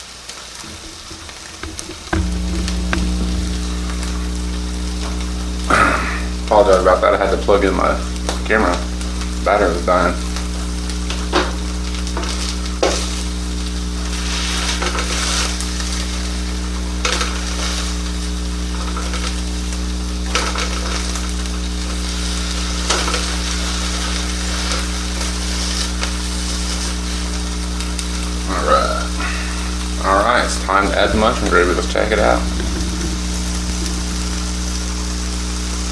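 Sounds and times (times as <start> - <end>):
burger patties sizzling in a pan: 0.0 - 35.9
low hum: 0.6 - 9.5, 29.2 - 35.9.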